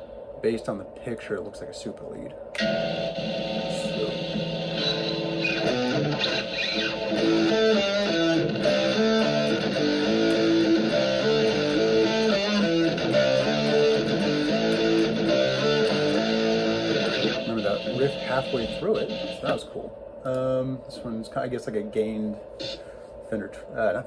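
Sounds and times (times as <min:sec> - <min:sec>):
distorted electric guitar riff: 0:02.6 - 0:19.8, 0:22.6 - 0:22.9.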